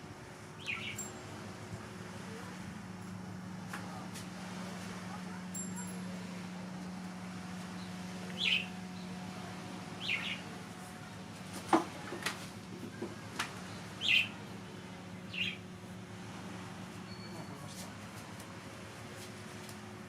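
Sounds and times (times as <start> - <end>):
steady low hum: 0.0 - 20.0
small bird chirping: 0.6 - 1.1, 8.4 - 8.7, 10.0 - 10.4.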